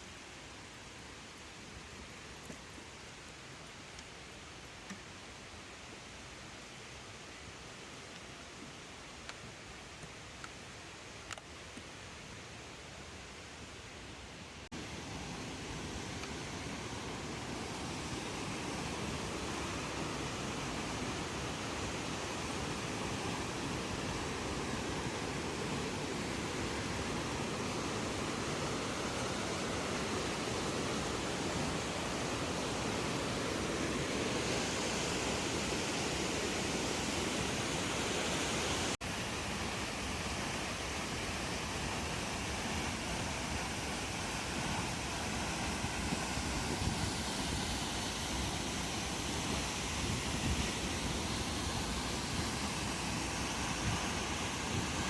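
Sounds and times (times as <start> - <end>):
waterfall rushing: 14.8 - 55.0.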